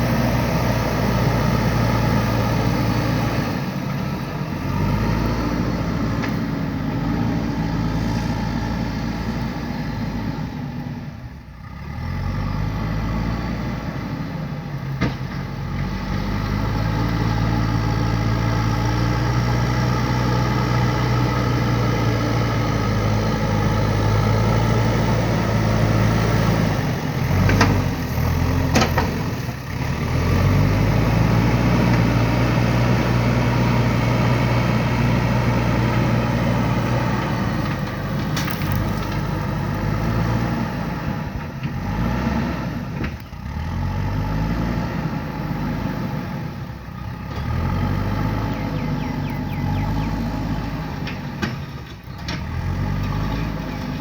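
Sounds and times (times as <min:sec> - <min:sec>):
diesel engine running: 0:00.0 - 0:54.0.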